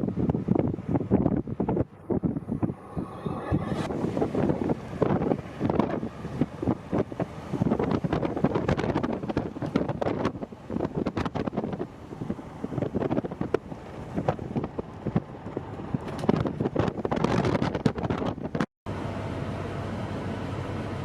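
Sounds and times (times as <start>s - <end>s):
steady low rumble: 0.0s - 17.2s
wind buffeting microphone: 0.0s - 18.7s.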